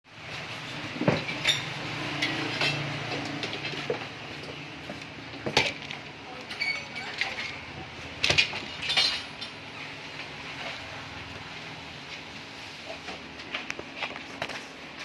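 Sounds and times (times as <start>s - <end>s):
metal tools clinking and knocking: 1.1s - 4.6s, 5.4s - 9.9s.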